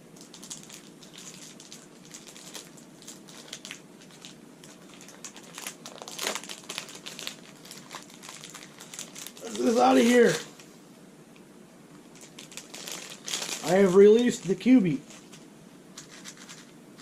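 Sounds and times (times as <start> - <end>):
plastic packaging crinkling: 0.2 - 10.7, 12.0 - 17.0.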